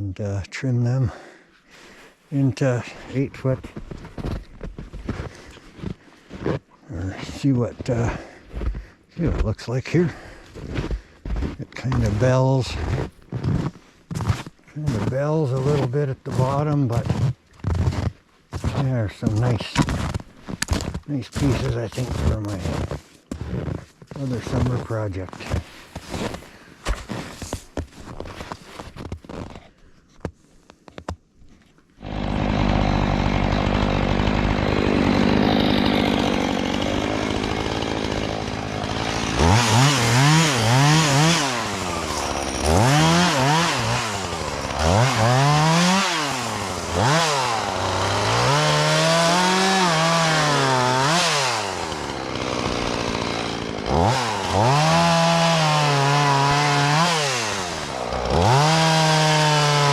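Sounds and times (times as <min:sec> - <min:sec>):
chainsaw cutting logs: 0:00.8 - 0:29.8, 0:31.0 - 0:59.9.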